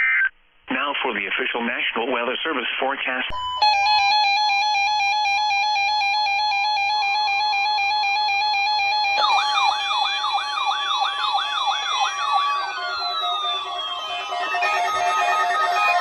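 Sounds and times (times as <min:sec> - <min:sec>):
electronic alarm tones: 0:03.4 - 0:16.0.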